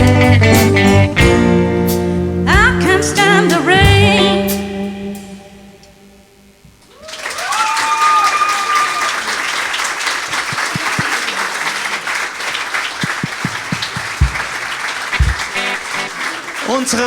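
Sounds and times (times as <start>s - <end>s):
band playing: 0.0s - 5.3s, 12.9s - 16.6s
audience applauding and cheering: 6.9s - 17.0s.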